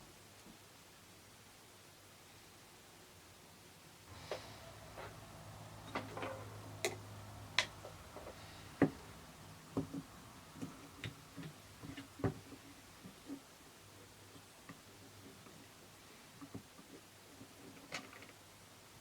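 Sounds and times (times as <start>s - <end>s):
faint low hum: 4.0s - 19.0s.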